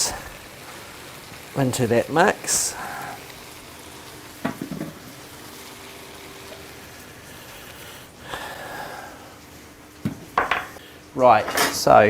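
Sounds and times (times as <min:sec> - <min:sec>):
onions sizzling in a pan: 0:00.0 - 0:12.0.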